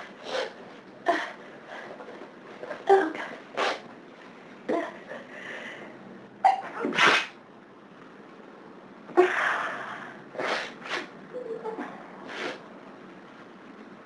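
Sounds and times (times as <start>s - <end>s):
person sneezing: 6.4s - 7.4s.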